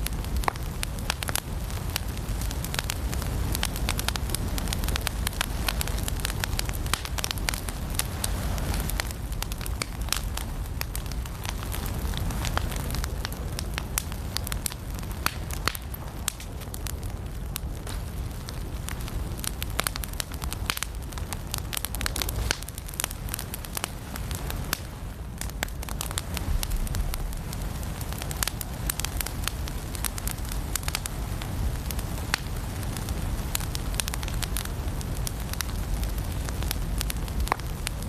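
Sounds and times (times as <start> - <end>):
crackles and pops of firewood: 0.0 - 38.0
low rumble of flames: 0.0 - 38.0.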